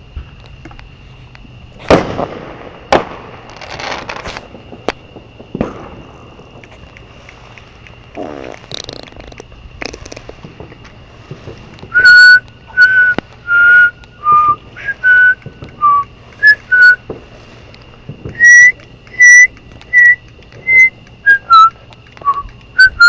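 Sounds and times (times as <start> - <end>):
person whistling a tune: 11.9 - 17.0, 18.4 - 23.0.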